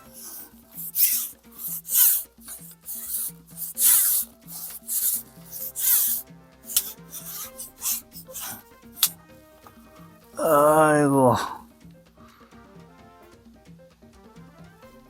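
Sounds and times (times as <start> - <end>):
catfish croaking: 0.0 - 9.2, 10.4 - 11.6
soft background music: 0.0 - 15.0.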